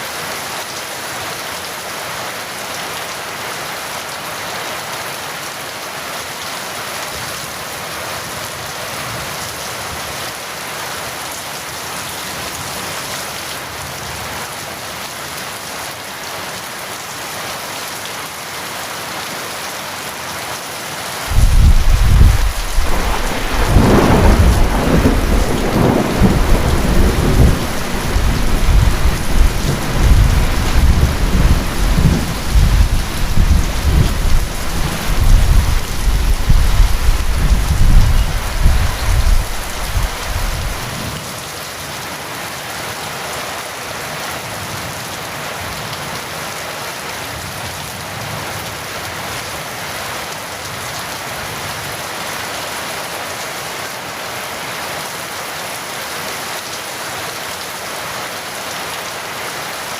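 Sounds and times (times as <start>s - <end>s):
heavy rain: 0.0s - 59.9s
rolling thunder: 21.3s - 41.0s.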